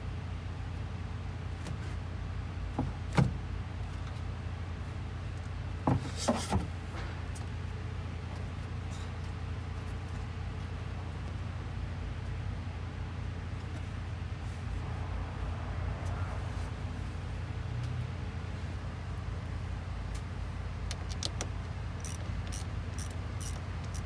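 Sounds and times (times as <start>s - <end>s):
steady low rumble: 13.4s - 21.0s.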